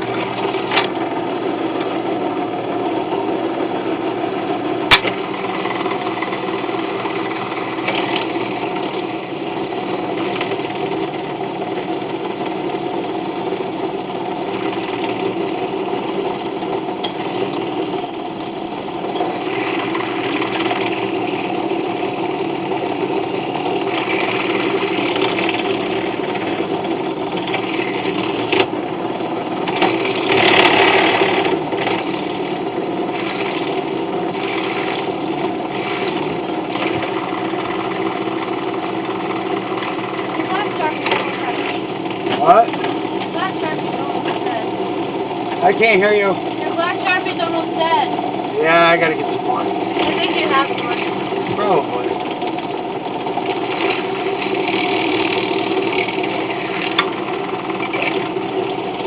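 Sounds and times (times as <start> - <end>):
power tool humming: 0.0 - 1.0, 5.5 - 28.9, 29.6 - 59.0
high metal squeal: 7.9 - 28.6, 30.0 - 37.0, 40.8 - 57.0.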